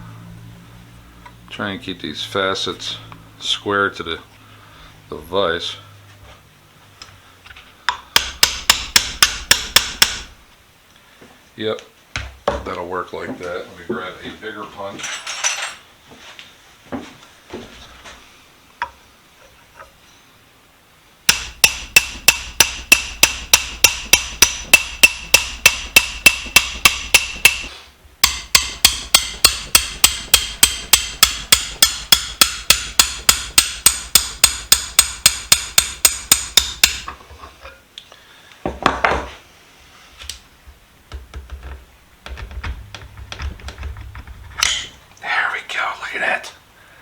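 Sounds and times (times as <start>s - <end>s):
hammer striking steel punch: 8.2s - 10.4s, 21.3s - 37.2s
knocks and scrape: 36.7s - 37.8s, 38.7s - 45.0s.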